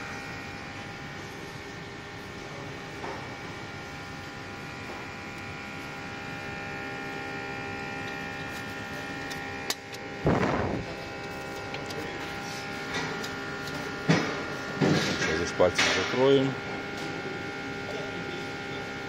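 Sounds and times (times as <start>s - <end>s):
electric pump humming: 0.0s - 19.0s
loud burst of noise: 10.2s - 10.9s.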